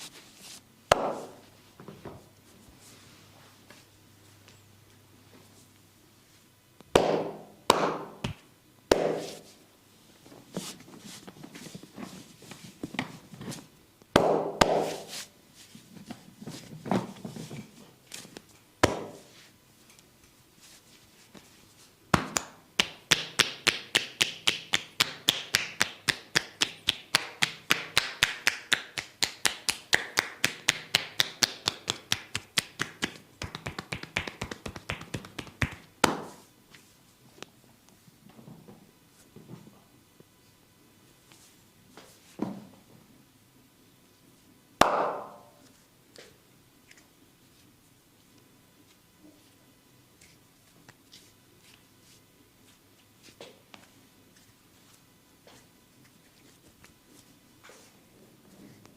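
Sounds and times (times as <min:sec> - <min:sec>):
hands slapping body in massage: 0:00.9 - 0:01.4, 0:06.9 - 0:09.6, 0:14.2 - 0:15.3, 0:22.1 - 0:36.4, 0:44.8 - 0:45.5.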